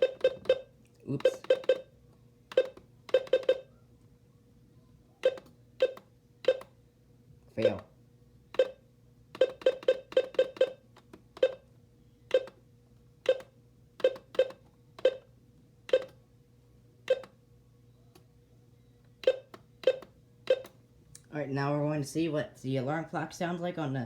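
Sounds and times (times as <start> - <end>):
button-press beeps: 0.0 - 1.9, 2.5 - 3.7, 5.2 - 6.7, 8.6 - 8.8, 9.4 - 10.8, 11.4 - 11.6, 13.3 - 15.3, 15.9 - 16.2, 17.1 - 17.4, 19.2 - 20.7
faint steady hum: 0.0 - 24.0.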